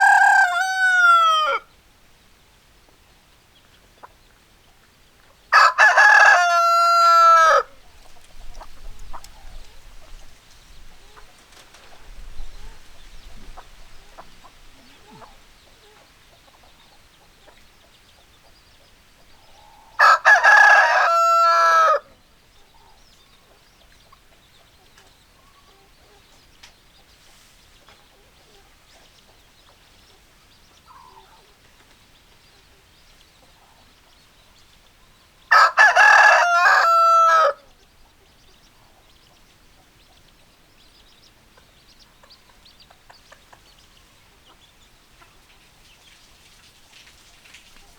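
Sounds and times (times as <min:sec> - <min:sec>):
rooster crowing: 0:00.0 - 0:01.7, 0:05.5 - 0:07.8, 0:19.9 - 0:22.1, 0:35.5 - 0:37.6.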